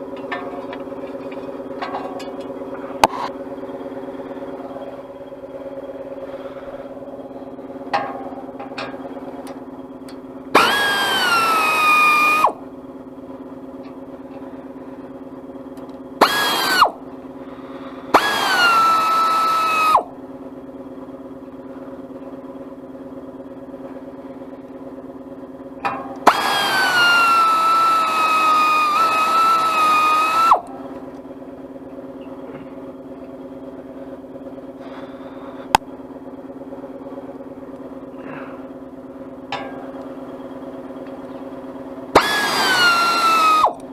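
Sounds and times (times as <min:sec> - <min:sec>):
low hum: 0:00.0 - 0:43.9
power drill whining: 0:10.5 - 0:12.6, 0:16.2 - 0:17.0, 0:17.8 - 0:20.1, 0:26.2 - 0:30.8, 0:42.1 - 0:43.9.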